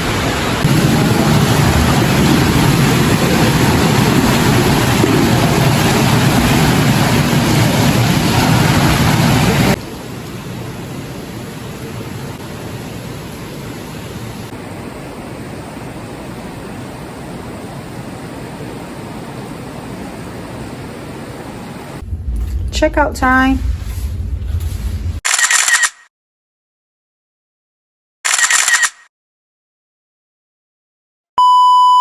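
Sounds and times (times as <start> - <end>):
steady rushing noise: 0.0 - 25.2.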